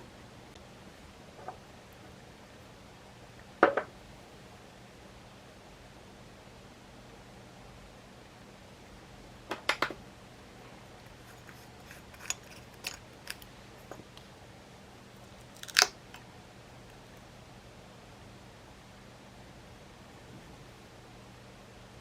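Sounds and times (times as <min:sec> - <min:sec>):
faint steady hum: 0:00.0 - 0:22.0
clicks of small hard objects: 0:11.2 - 0:14.0, 0:15.5 - 0:16.2.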